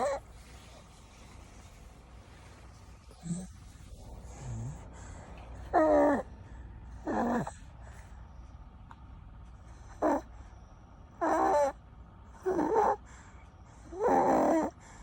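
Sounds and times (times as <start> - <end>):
baby snoring: 0.0 - 0.2, 3.2 - 5.0, 5.6 - 6.3, 7.0 - 7.7, 9.8 - 10.3, 11.2 - 11.8, 12.4 - 13.1, 13.8 - 14.8.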